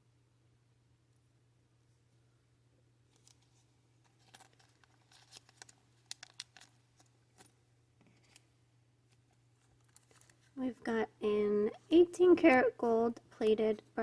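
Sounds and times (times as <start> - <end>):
packaging crinkling: 4.2 - 7.5, 9.8 - 10.6.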